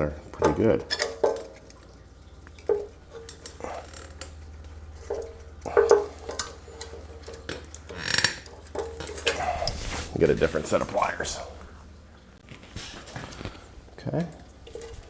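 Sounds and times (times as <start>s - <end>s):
steady low hum: 0.0s - 15.0s
metal tools clinking and scraping: 0.4s - 1.8s, 5.0s - 11.4s.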